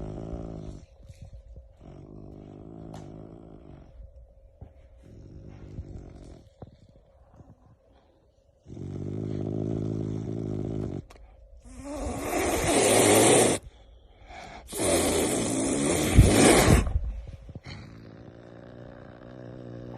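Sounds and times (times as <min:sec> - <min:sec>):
wild cat growling: 0:00.0 - 0:04.1, 0:05.0 - 0:07.6, 0:08.6 - 0:13.6, 0:14.5 - 0:19.9
wild cat hissing: 0:08.6 - 0:19.9.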